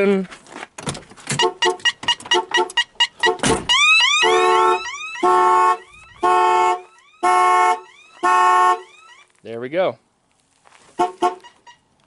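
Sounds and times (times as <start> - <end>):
car horn blasts: 1.3 - 3.6, 4.2 - 9.0, 11.0 - 11.8
car alarm siren: 1.4 - 9.3.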